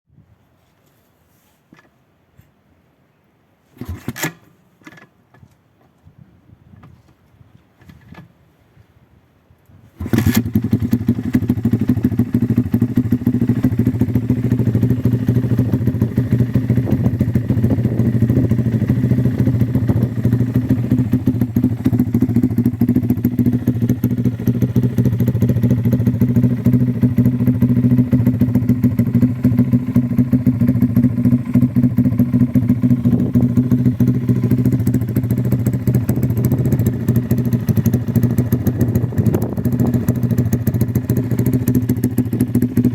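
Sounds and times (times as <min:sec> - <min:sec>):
engine starting and idling: 0:10.0 - 0:11.6.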